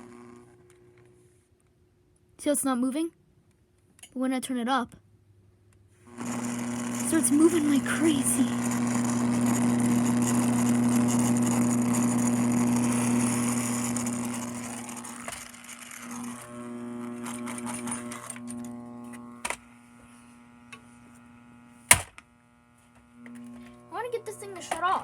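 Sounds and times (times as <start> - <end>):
static hiss from speaker: 0.0 - 1.4, 6.1 - 25.0
low electrical hum: 0.0 - 4.4, 5.0 - 25.0
faint steady tones: 6.1 - 25.0.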